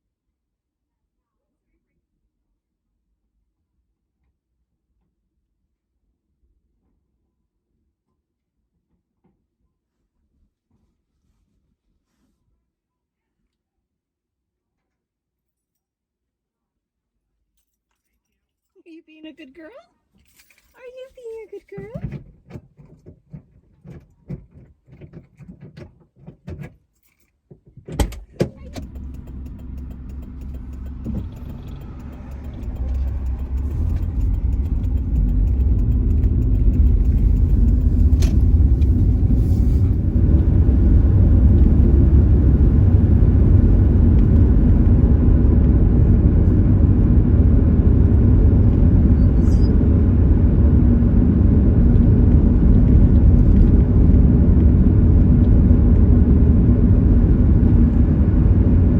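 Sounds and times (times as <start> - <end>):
car engine and road rumble: 28.0 - 58.9.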